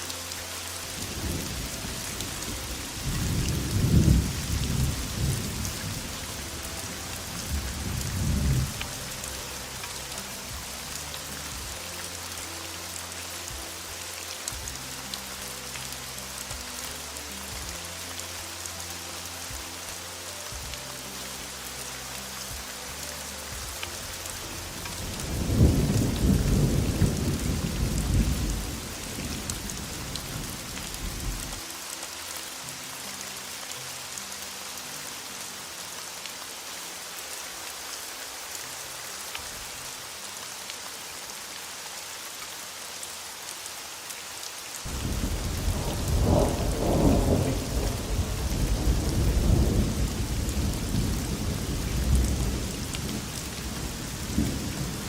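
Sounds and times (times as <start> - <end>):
heavy rain: 0.0 - 55.0
thunder rumbling: 1.0 - 6.7, 7.3 - 8.9, 25.0 - 31.6, 44.9 - 55.0.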